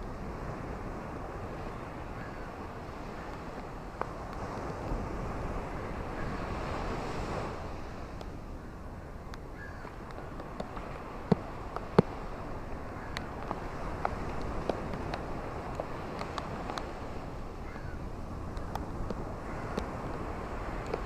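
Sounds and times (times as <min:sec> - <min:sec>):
ocean waves washing on shore: 0:00.0 - 0:21.0
sharp little ticks: 0:13.1 - 0:16.9.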